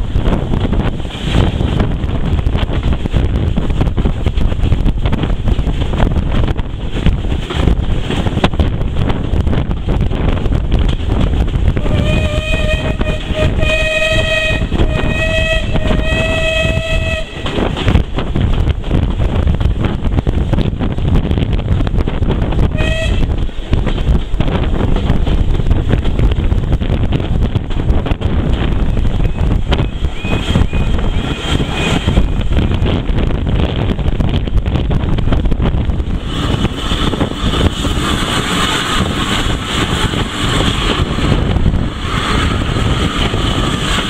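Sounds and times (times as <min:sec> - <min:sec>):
low rumble: 0:00.0 - 0:44.0
locomotive whistle toots: 0:11.8 - 0:17.5, 0:22.7 - 0:23.3, 0:29.2 - 0:32.4.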